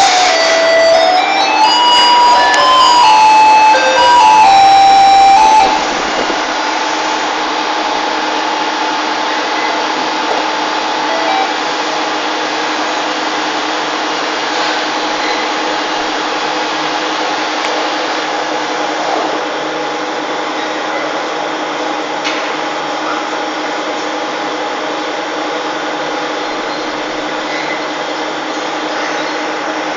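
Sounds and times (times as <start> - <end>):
loud music: 0.0 - 7.2
machine humming with steady tones: 0.0 - 29.9.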